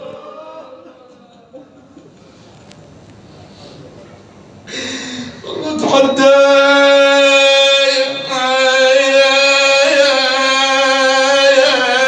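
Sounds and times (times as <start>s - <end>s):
man chanting a lament: 0.0s - 1.3s, 5.4s - 12.0s.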